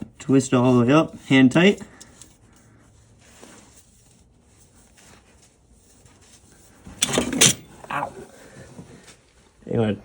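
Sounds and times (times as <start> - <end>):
handling noise: 2.0 - 9.2.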